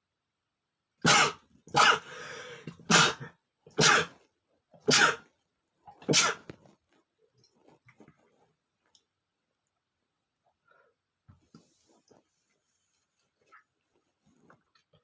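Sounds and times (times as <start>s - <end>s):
man sneezing: 1.0s - 4.1s, 4.9s - 5.2s, 6.1s - 6.5s.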